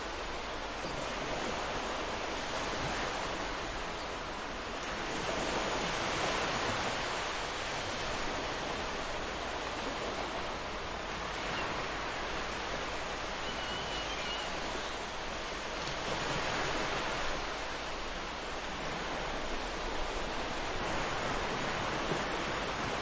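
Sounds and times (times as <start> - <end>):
ocean surf breaking on beach: 0.0 - 23.0.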